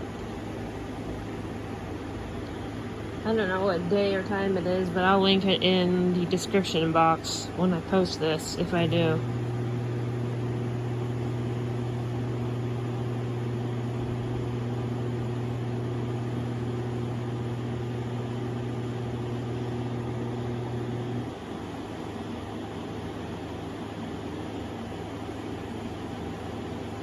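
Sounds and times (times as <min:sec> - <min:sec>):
air conditioner electrical hum: 0:00.0 - 0:27.0
fan air noise: 0:00.0 - 0:27.0.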